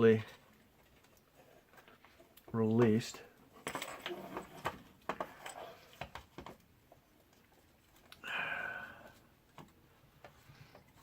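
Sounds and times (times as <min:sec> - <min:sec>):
breathy rustle: 0:08.1 - 0:09.3.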